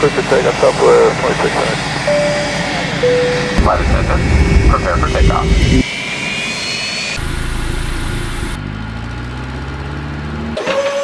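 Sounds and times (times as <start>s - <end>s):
jet engine whine: 2.1s - 8.6s
jet engine rumble: 3.6s - 5.8s.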